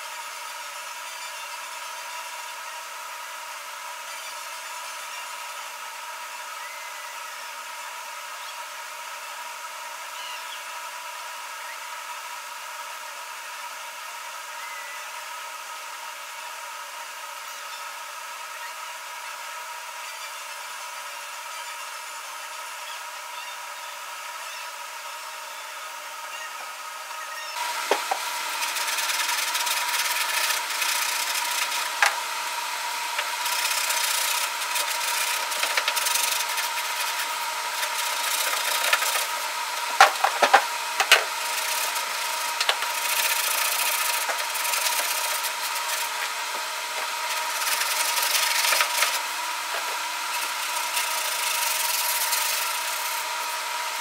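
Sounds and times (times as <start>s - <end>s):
power sander whining and rubbing: 15.6s - 54.0s.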